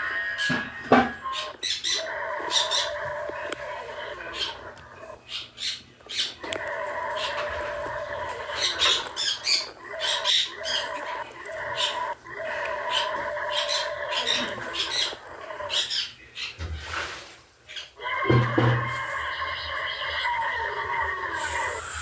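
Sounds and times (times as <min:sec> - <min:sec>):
bird chirping: 0:00.4 - 0:16.6.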